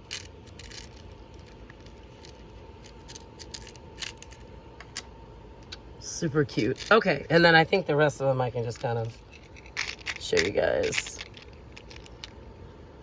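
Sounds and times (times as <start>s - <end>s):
charms clicking and rustling: 0.0s - 5.8s, 6.5s - 7.1s, 8.6s - 12.4s
faint steady hum: 0.0s - 13.0s.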